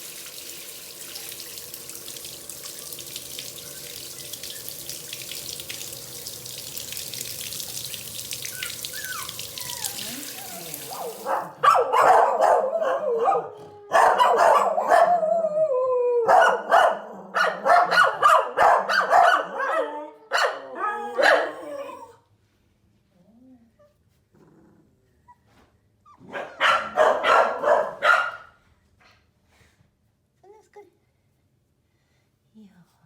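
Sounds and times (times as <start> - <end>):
puppies barking and whining: 8.4 - 22.2.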